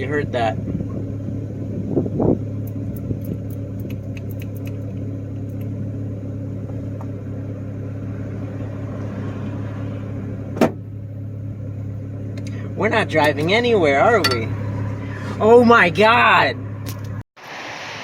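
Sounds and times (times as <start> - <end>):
car engine idling: 0.0 - 17.2.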